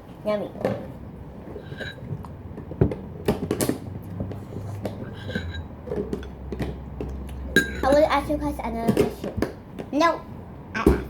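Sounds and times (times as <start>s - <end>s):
spoons clicking on bowls: 5.1s - 8.1s.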